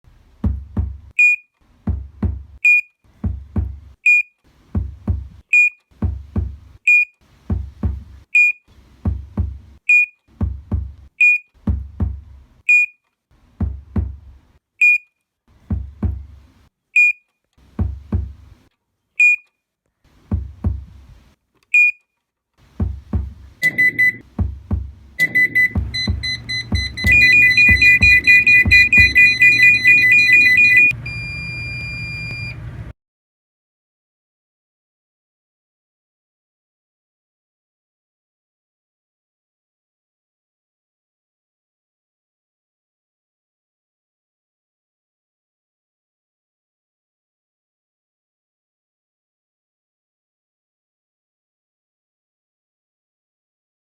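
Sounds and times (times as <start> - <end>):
heartbeat double thumps: 0.4 - 1.1, 1.9 - 2.6, 3.2 - 4.0, 4.8 - 5.4, 6.0 - 6.7, 7.5 - 8.2, 9.1 - 9.7, 10.4 - 11.0, 11.7 - 12.4, 13.6 - 14.3, 15.7 - 16.4, 17.8 - 18.4, 20.3 - 21.0, 22.8 - 32.8
monitor alarm tone: 23.6 - 24.2, 25.2 - 32.7
short high monitor beep: 23.6 - 24.2, 25.2 - 32.6.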